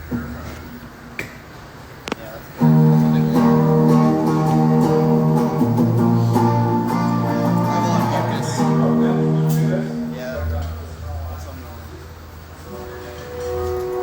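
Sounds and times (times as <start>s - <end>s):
guitar playing held chords: 2.6s - 11.1s, 12.7s - 14.0s.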